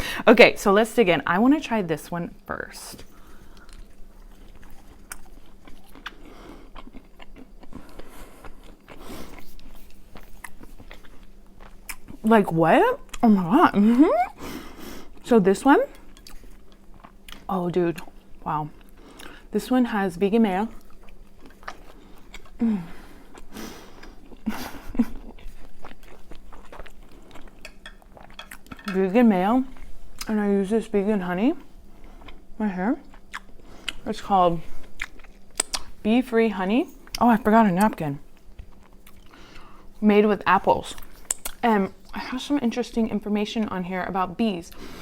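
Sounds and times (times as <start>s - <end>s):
crunchy food chewing: 3.0s - 12.3s, 15.9s - 19.5s, 20.7s - 29.0s, 31.6s - 36.1s, 36.9s - 40.0s.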